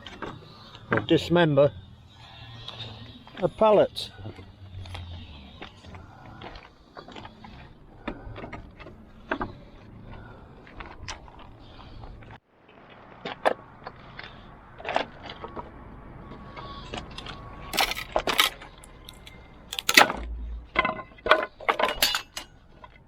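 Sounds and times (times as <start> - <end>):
wooden pallet breaking: 17.8 - 20.2.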